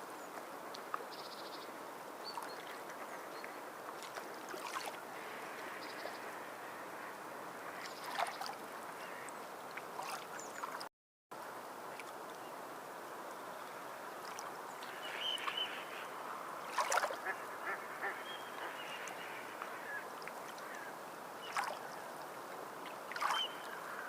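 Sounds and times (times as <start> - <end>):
water lapping and sloshing: 2.2 - 10.9, 11.9 - 12.5, 13.4 - 24.0
small splashes: 3.9 - 6.2, 7.8 - 8.6, 9.2 - 10.9, 14.2 - 15.7, 16.7 - 17.8, 21.4 - 22.0, 22.8 - 23.8.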